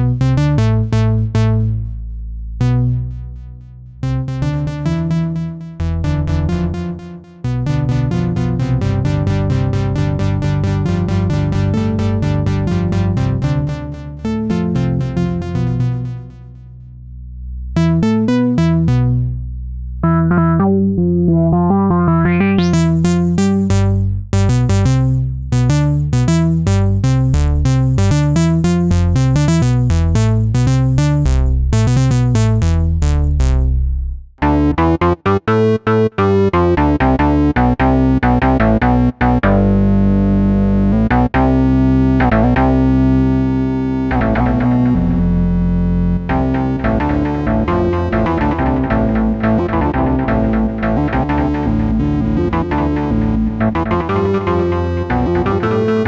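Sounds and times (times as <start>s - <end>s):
synthesizer playing sequenced notes: 4.0s - 16.7s, 17.8s - 19.3s, 34.4s - 56.0s.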